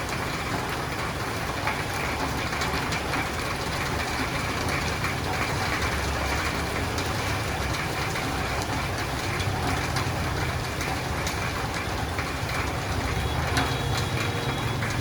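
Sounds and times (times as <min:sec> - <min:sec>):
rain on roof and windows: 0:00.0 - 0:15.0.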